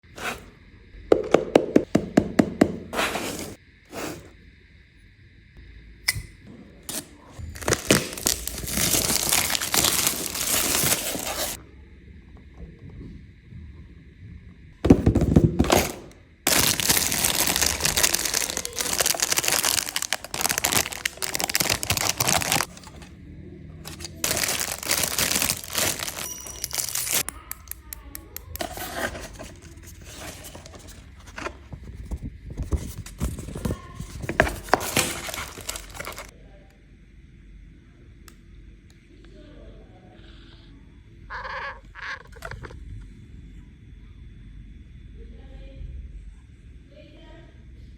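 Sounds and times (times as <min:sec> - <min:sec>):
packaging rustling and crinkling: 0:03.0 - 0:04.2, 0:07.4 - 0:11.6, 0:14.9 - 0:23.1, 0:23.8 - 0:27.2, 0:28.6 - 0:36.3.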